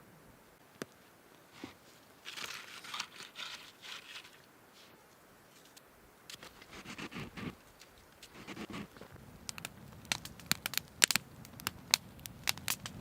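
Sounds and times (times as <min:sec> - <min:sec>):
dry twigs rustling and crackling: 0:00.7 - 0:04.5, 0:05.5 - 0:13.0.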